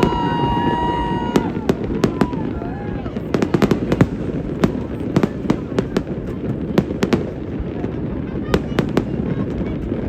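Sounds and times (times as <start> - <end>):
fireworks bangs and cracks: 0.0 - 10.0.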